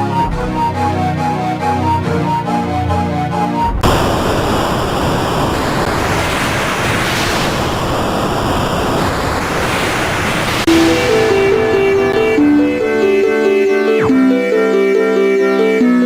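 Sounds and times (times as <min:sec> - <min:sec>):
rushing electronic noise: 0:03.8 - 0:14.1
faint high steady tones: 0:10.6 - 0:14.4.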